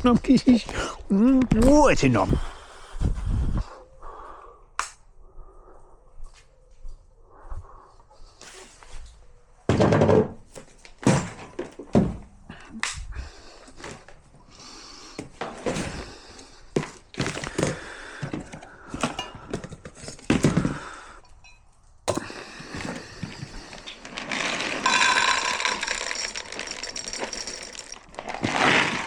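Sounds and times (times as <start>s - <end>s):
knocks and clatter of food preparation: 9.7s - 10.4s, 11.0s - 12.3s, 16.8s - 20.9s.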